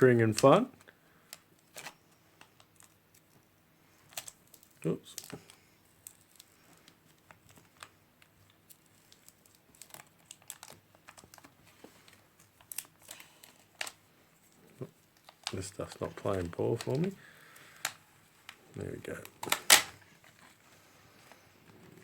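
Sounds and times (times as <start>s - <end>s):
paper and plastic crinkling: 0.0s - 22.0s.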